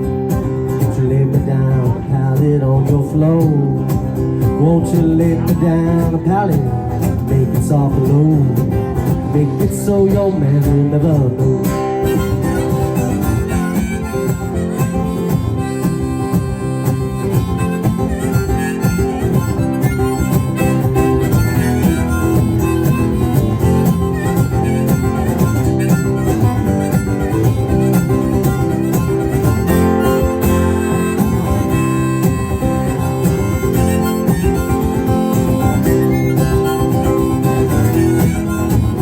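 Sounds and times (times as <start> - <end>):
acoustic guitar accompaniment: 0.0 - 39.0
harmonica playing: 11.6 - 39.0.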